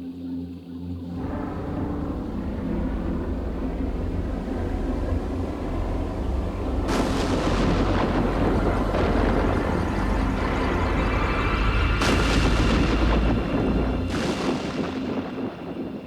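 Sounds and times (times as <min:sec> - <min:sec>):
low rumble: 0:01.1 - 0:16.0
loud thunder-like crashing: 0:06.5 - 0:16.0.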